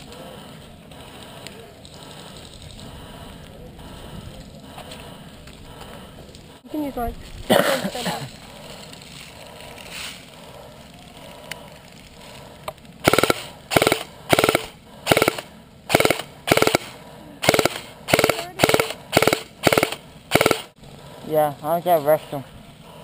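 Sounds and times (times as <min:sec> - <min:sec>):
airsoft gun full-auto bursts: 0:13.0 - 0:20.8.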